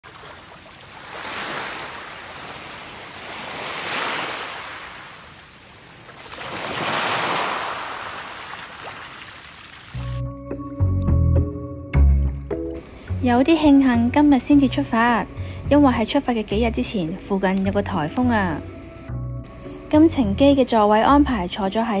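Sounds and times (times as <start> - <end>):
sea waves washing in: 0.0 - 10.0.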